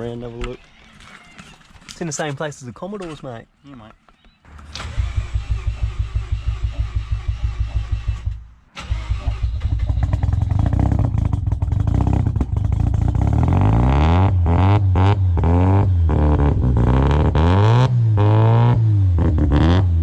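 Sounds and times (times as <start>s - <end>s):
engine cranking on starter: 4.5s - 11.4s
engine running and revving: 4.6s - 8.4s, 9.2s - 20.0s.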